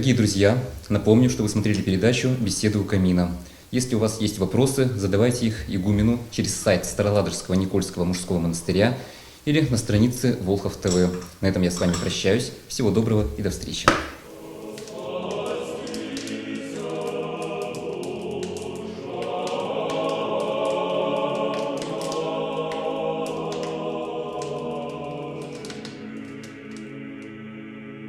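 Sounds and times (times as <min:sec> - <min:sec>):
choir singing sustained chords: 0:14.2 - 0:28.0
faint crackle of clicks: 0:14.7 - 0:27.4.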